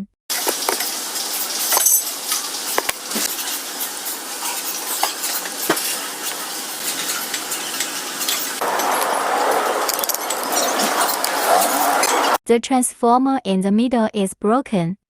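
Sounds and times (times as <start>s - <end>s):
steady sizzling hiss: 0.3s - 12.4s.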